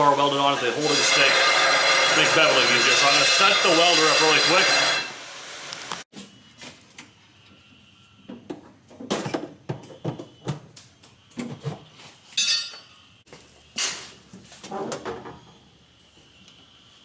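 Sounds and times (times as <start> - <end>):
metal tools clanking: 12.4 - 13.0.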